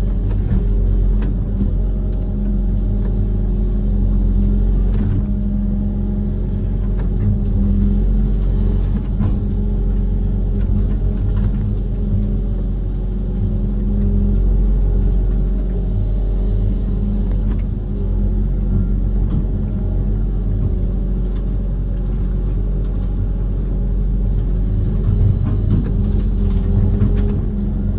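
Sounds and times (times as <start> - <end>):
diesel excavator engine running: 0.0 - 27.9.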